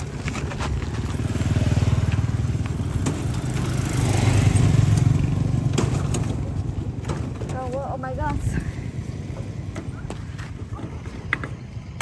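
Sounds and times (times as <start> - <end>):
motorcycle engine revving: 0.0 - 7.4.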